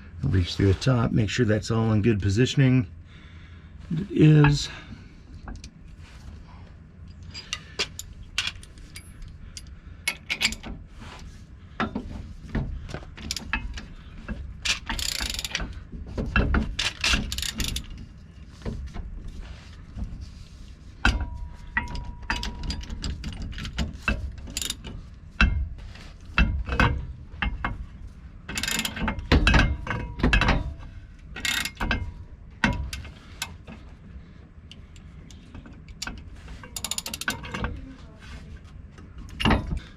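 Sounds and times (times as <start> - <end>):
ratchet clicking: 14.7 - 15.6, 16.8 - 18.0, 21.8 - 25.0, 28.5 - 30.5, 31.4 - 32.0, 35.9 - 37.6.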